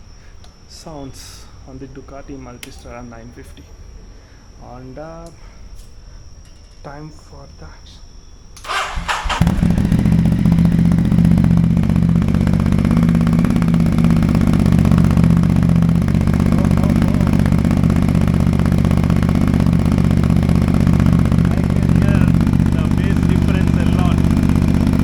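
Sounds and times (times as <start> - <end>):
motorcycle engine idling: 8.6 - 25.0.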